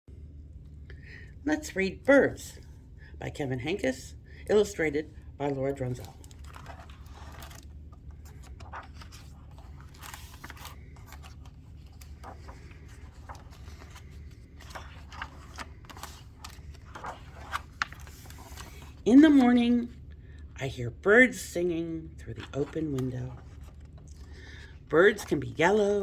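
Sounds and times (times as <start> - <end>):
steady low hum: 0.1 - 26.0
book pages turning: 5.4 - 19.9, 22.2 - 26.0
paper rustling: 5.7 - 19.9, 22.3 - 26.0.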